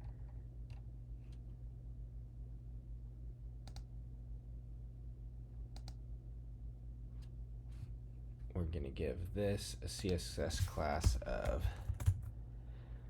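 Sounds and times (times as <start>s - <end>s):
low electrical hum: 0.0s - 13.0s
computer clicks: 3.6s - 3.9s, 5.7s - 6.0s.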